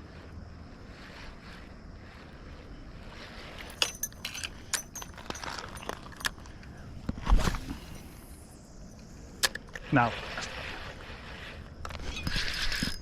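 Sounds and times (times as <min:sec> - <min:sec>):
river noise: 0:00.0 - 0:12.9
fishing tackle clicking and rattling: 0:03.6 - 0:06.7.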